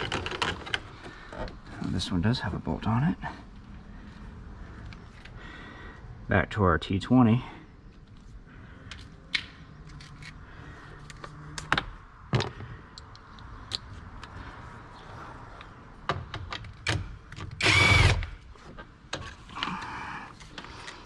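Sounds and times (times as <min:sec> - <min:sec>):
power drill whine: 0:17.6 - 0:18.4.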